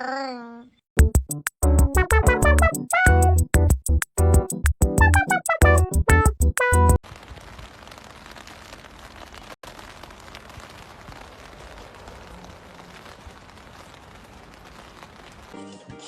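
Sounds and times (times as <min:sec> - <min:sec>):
steady broadband hiss: 0:07.0 - 0:16.0.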